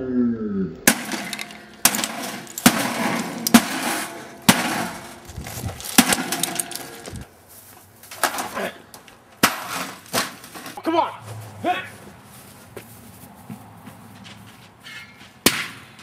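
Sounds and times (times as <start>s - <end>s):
clatter of breaking parts: 0.9s - 7.3s, 8.1s - 10.8s
heavy blows smashing toaster oven: 0.9s - 7.3s.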